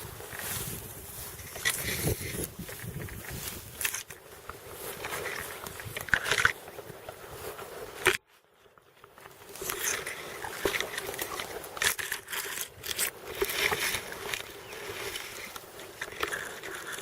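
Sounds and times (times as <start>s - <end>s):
rustling on the microphone: 0.0s - 17.0s.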